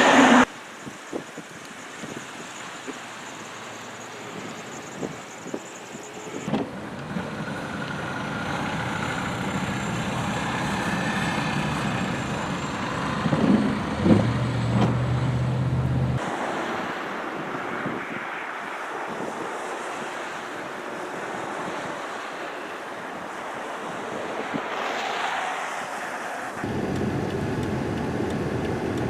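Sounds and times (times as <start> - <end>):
motor vehicle running: 6.2 - 16.2, 26.5 - 29.0.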